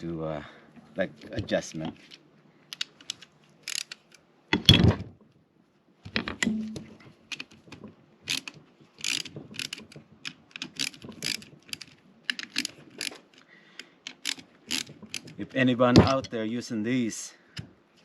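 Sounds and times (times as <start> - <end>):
metal tools clicking and clinking: 14.1 - 16.4.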